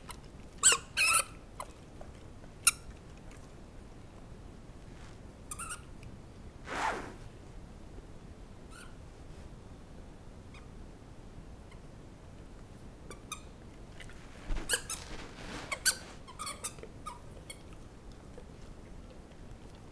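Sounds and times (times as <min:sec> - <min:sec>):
squeaky dog toy squeaking: 0:00.6 - 0:01.3, 0:15.7 - 0:17.6.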